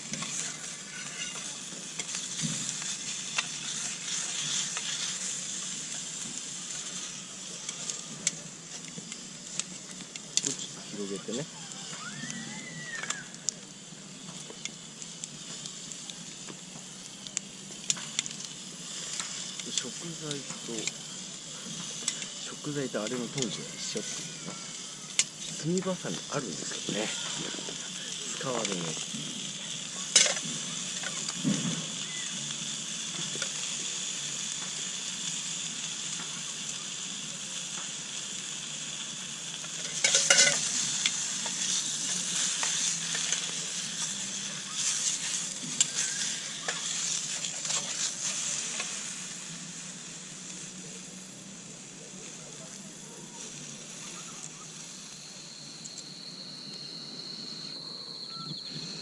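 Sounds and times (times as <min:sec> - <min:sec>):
food sizzling in a pan: 0:00.0 - 0:59.0
high insect chirr: 0:00.0 - 0:59.0
utensils scraping and clinking: 0:00.1 - 0:02.2, 0:39.8 - 0:43.6, 0:44.8 - 0:49.0.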